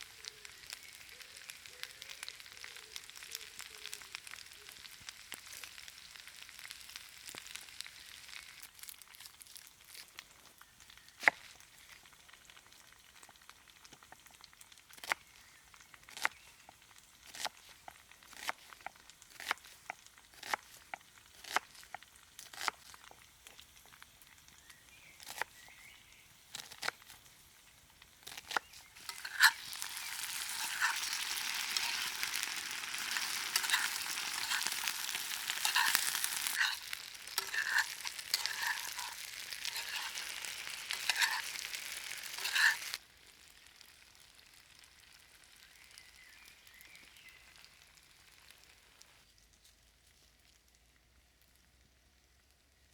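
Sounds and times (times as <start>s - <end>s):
food sizzling and popping: 0.0s - 52.9s.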